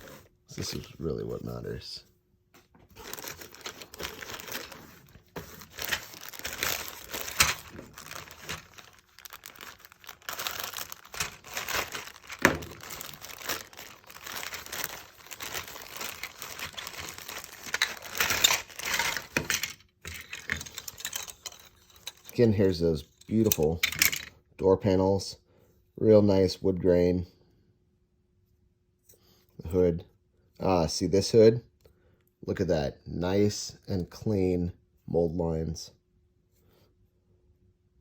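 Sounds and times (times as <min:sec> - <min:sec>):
plastic bag crinkling: 0:02.9 - 0:24.2.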